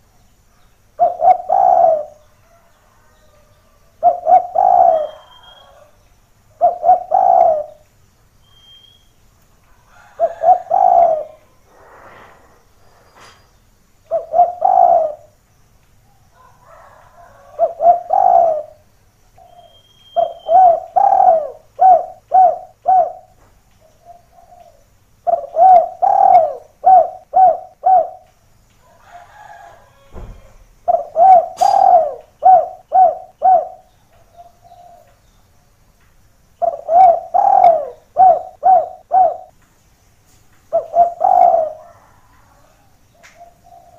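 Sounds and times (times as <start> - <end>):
dove cooing: 1.0 - 2.2, 4.0 - 7.8, 10.0 - 12.5, 14.1 - 15.4, 16.4 - 18.8, 19.5 - 28.3, 29.1 - 35.2, 36.6 - 39.6, 40.7 - 43.9.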